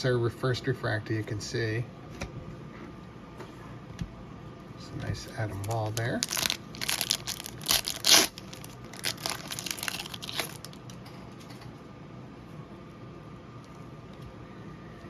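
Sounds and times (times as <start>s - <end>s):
foil wrapper crinkling and tearing: 5.4s - 11.0s.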